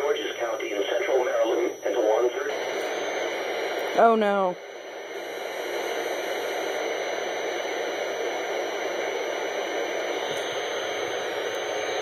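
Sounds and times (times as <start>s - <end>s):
radio static hiss: 0.0s - 12.0s.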